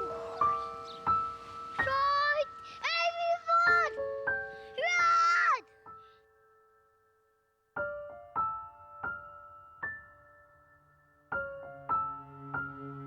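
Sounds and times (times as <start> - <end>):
piano single notes: 0.0 - 6.9.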